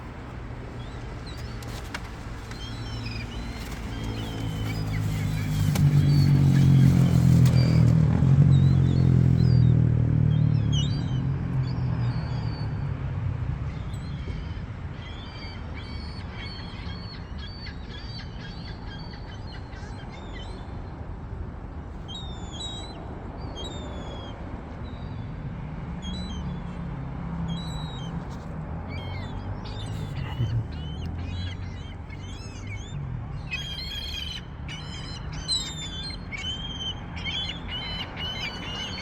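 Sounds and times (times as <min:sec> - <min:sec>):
gulls calling: 0:00.0 - 0:09.7, 0:27.6 - 0:39.0
engine hum: 0:00.0 - 0:17.6, 0:20.8 - 0:39.0.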